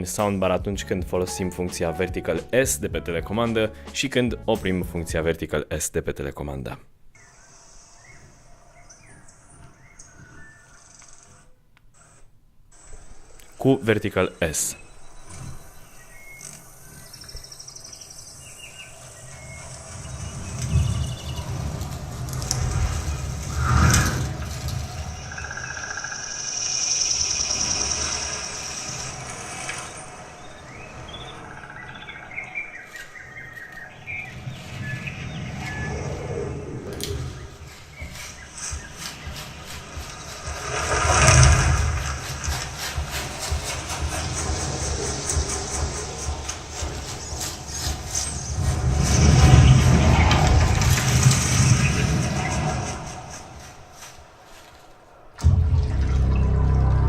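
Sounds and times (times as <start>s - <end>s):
bird chirps: 7.2s - 11.4s, 13.4s - 50.5s
high insect-like hiss: 14.3s - 50.8s
low rumble: 18.9s - 32.4s, 34.0s - 54.0s, 55.4s - 57.0s.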